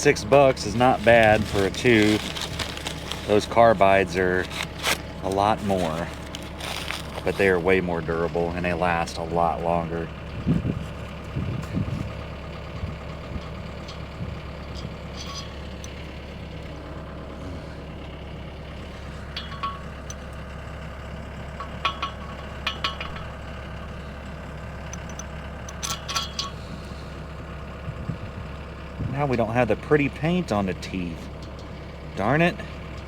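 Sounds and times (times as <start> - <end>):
engine idling: 0.0 - 33.0
socket wrench clinking on metal: 14.7 - 16.0, 19.3 - 20.2, 21.6 - 23.3, 24.9 - 26.6.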